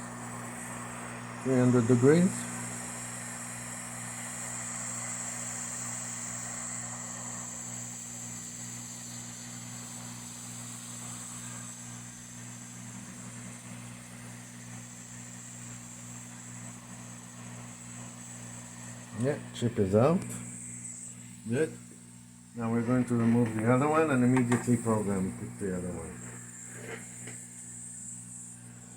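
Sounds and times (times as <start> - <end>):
low fan hum: 0.0 - 10.4, 18.8 - 28.9
hot air blower hiss: 0.0 - 28.9.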